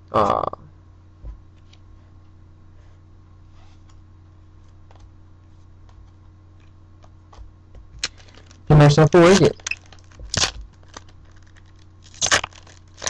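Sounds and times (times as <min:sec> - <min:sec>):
low electrical hum: 0:00.0 - 0:13.0
cards and foil pack rustling: 0:08.0 - 0:13.0.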